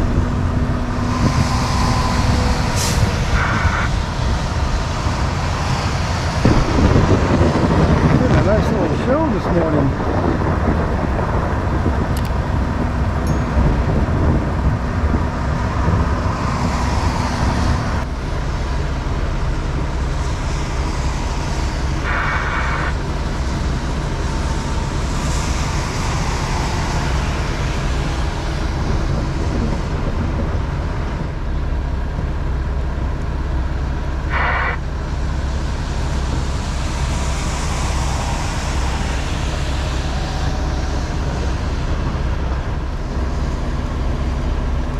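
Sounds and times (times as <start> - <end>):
diesel truck engine humming: 0.0 - 44.9
short bursts of higher noise: 34.3 - 34.9.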